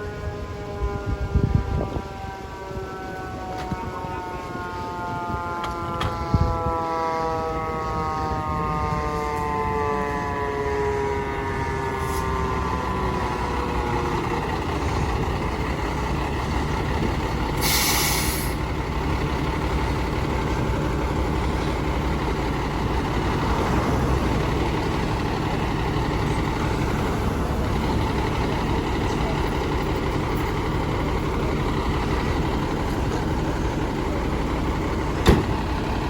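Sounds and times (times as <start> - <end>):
engine rumble: 0.0 - 36.0
fire engine siren winding down: 0.0 - 36.0
air brakes hiss: 17.6 - 18.6.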